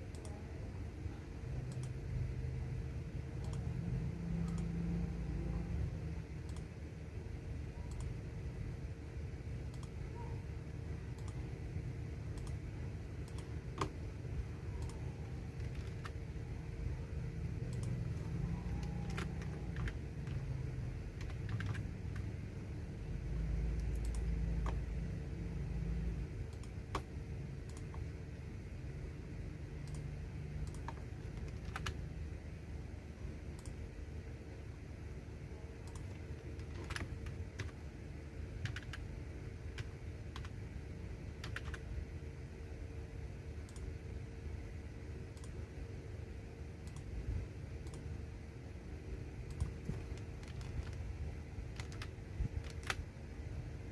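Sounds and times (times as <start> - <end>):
keyboard typing clicks: 0.0 - 0.4, 1.6 - 2.0, 3.3 - 4.9, 6.4 - 6.8, 7.8 - 8.3, 9.6 - 10.4, 11.1 - 11.6, 12.2 - 14.1, 14.7 - 16.4, 17.6 - 22.4, 23.6 - 25.0, 26.4 - 28.1, 29.8 - 32.0, 33.5 - 33.8, 35.7 - 37.8, 38.5 - 40.6, 41.4 - 41.9, 43.6 - 44.0, 45.3 - 45.6, 46.8 - 47.2, 47.8 - 48.2, 49.4 - 51.1, 51.7 - 53.1
faint steady hum: 0.0 - 53.9
steady low rumble: 0.1 - 53.9.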